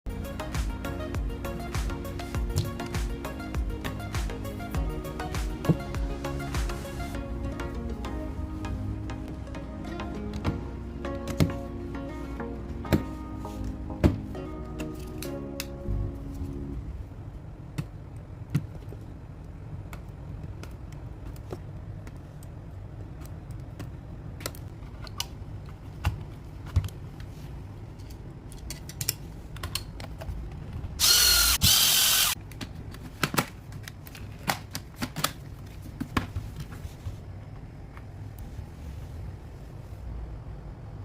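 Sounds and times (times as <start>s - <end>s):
small power tool whirring: 31.0s - 32.4s.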